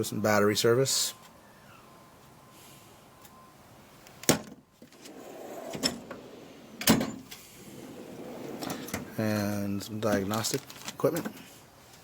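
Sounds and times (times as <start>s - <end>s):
drawer rolling on slides: 4.9s - 9.3s
steel drawer clacking: 5.0s - 7.2s, 7.8s - 9.2s.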